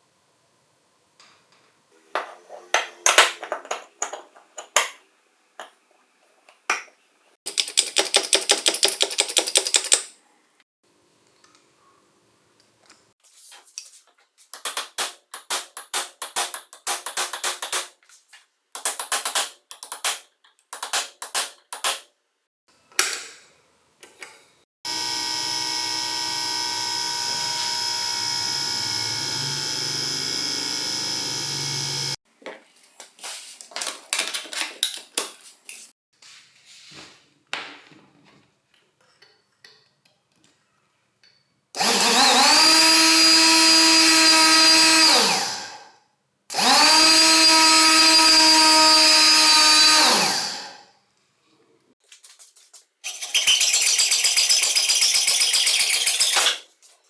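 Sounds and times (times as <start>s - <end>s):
handling clicks and tapping: 18.8s - 22.0s
power tool motor running: 24.9s - 32.2s, 41.8s - 45.8s, 46.5s - 50.8s.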